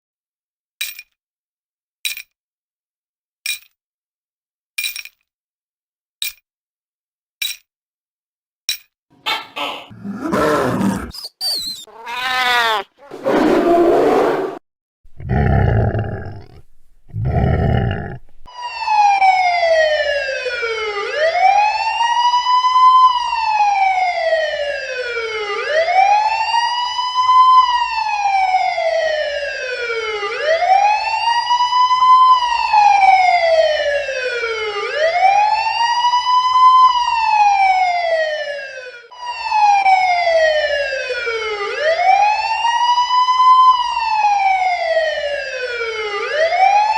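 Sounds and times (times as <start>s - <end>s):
police siren wailing: 18.4s - 46.9s.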